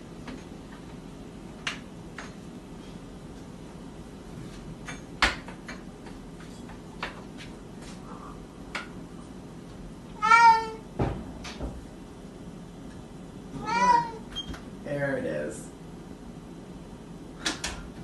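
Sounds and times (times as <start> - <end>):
cat meowing: 10.2 - 10.8, 13.6 - 14.3.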